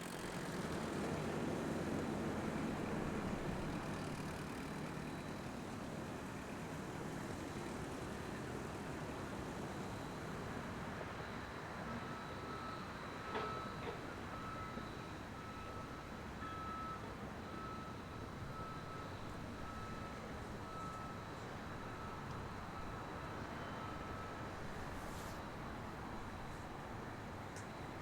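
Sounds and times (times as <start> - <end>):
steady background noise: 0.0 - 28.0
reversing alarm beeping: 9.7 - 26.6.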